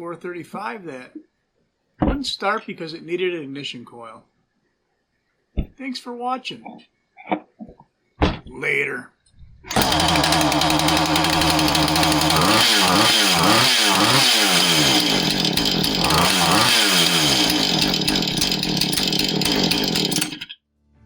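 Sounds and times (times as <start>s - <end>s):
chainsaw engine revving: 9.7s - 20.5s.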